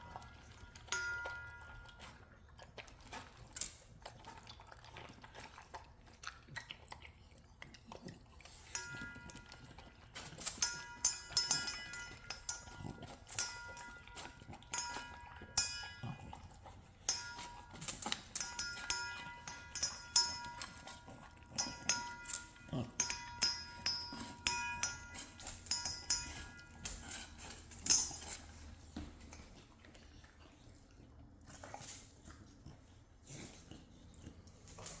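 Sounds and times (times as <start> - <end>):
bowl clinking: 0.0 - 2.2, 8.6 - 29.4
dog crunching kibble: 20.4 - 23.0.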